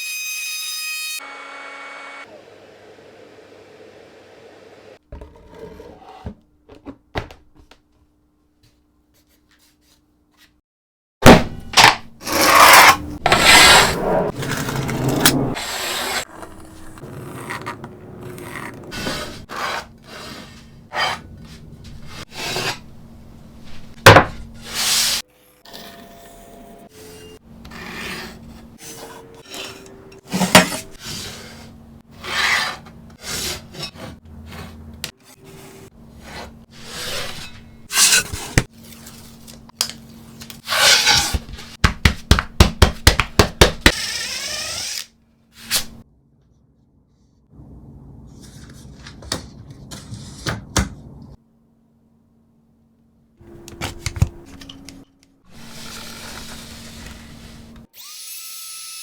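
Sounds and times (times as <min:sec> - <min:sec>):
scraping on wooden board: 0:12.2 - 0:21.2.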